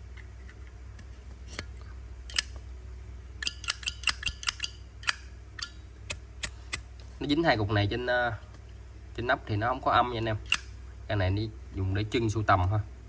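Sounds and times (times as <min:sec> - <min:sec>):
lighter lid clicking open and shut: 0:02.3 - 0:02.6, 0:03.4 - 0:06.8.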